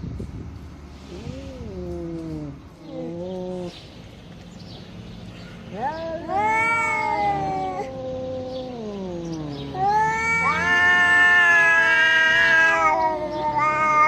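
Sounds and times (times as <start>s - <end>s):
angry cat yowling: 5.7s - 14.0s.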